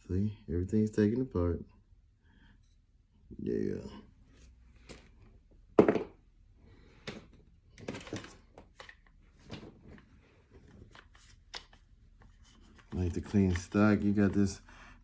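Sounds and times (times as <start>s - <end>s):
rifle parts knocking and clattering: 5.8s - 6.2s, 7.1s - 14.4s.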